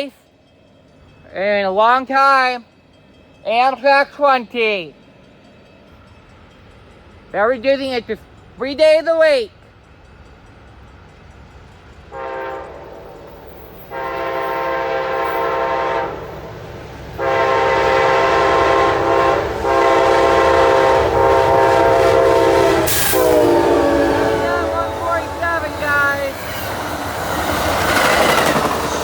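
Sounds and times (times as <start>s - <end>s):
locomotive air horn: 12.1s - 16.5s, 17.2s - 26.4s.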